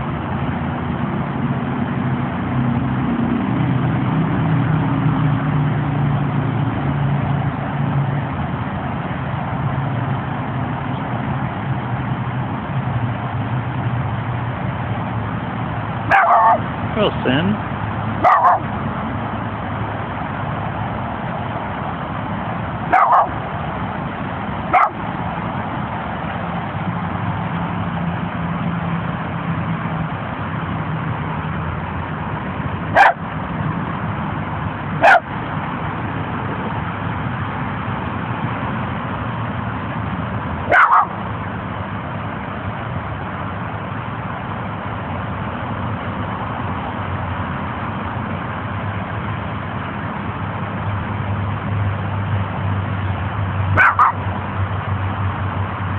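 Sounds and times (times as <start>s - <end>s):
small dog barking: 16.1s - 16.7s, 18.2s - 18.7s, 22.9s - 23.4s, 24.7s - 25.0s, 32.9s - 33.2s, 35.0s - 35.3s, 40.7s - 41.2s, 53.8s - 54.2s.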